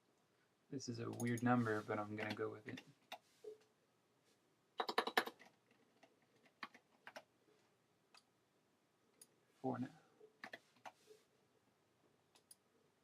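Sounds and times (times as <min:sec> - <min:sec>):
typing on computer keyboard: 0:04.8 - 0:07.3.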